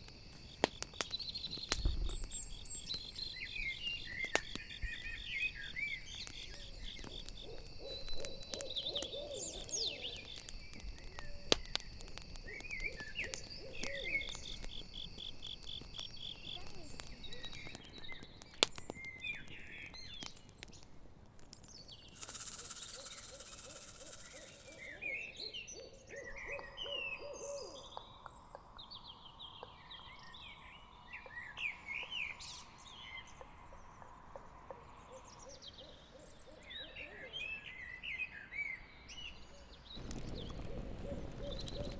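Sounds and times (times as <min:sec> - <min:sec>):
crickets chirping: 0:00.0 - 0:18.4, 0:22.0 - 0:25.3, 0:39.9 - 0:41.9
campfire crackling: 0:00.0 - 0:25.1, 0:39.2 - 0:41.9
owl hooting: 0:06.6 - 0:10.3, 0:12.5 - 0:14.6, 0:22.2 - 0:28.0
brief hiss: 0:22.2 - 0:25.0.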